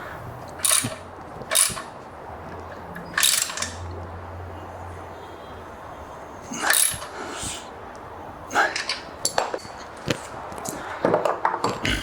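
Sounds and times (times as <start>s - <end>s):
ratchet wrench clicking: 0.5s - 1.9s, 3.2s - 3.8s, 6.7s - 7.1s.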